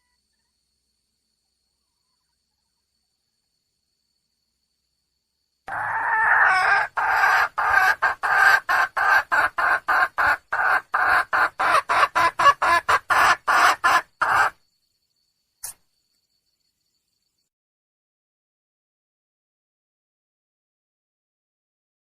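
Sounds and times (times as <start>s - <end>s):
hen calling and clucking: 5.7s - 14.6s.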